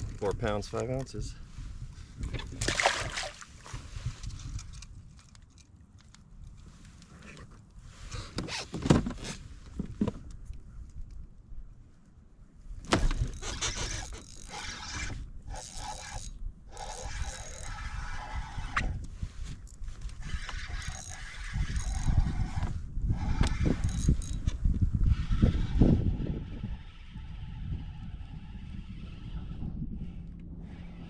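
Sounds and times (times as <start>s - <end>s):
gear clicking and rattling: 12.9s - 18.0s, 19.7s - 22.8s, 23.4s - 24.6s.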